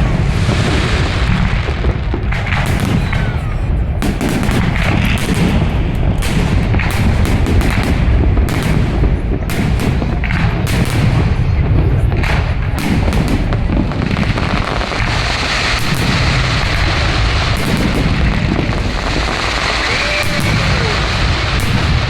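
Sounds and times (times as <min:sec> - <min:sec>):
fireworks bangs: 0:00.0 - 0:22.0
crackle of bursting shells: 0:12.2 - 0:22.0.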